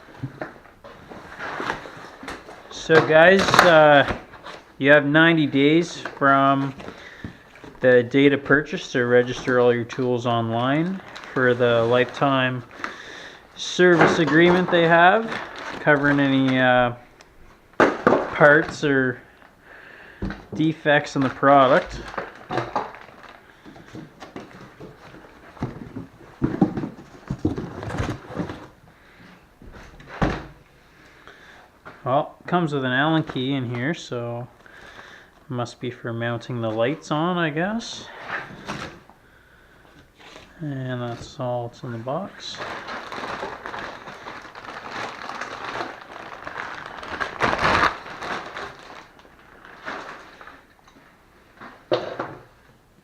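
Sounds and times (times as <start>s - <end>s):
packaging rustling in cardboard box: 10.8s - 13.0s, 13.6s - 16.6s, 20.6s - 28.8s, 42.4s - 50.7s
knocks and thumps: 23.8s - 28.7s.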